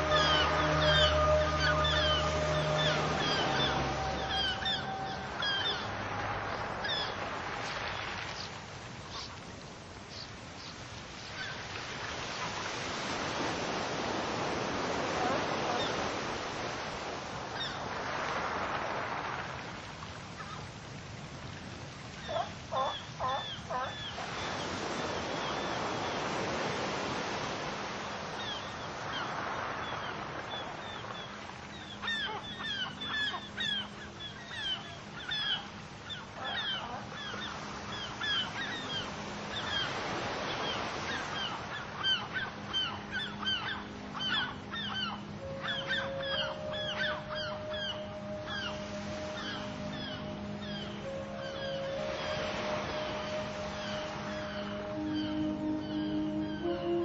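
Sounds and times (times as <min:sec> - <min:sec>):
short high bird calls: 0:00.0 - 0:06.0, 0:42.0 - 0:57.0
loud bird calls: 0:00.0 - 0:06.1, 0:28.4 - 0:57.0
waves washing onto beach: 0:00.0 - 0:57.0.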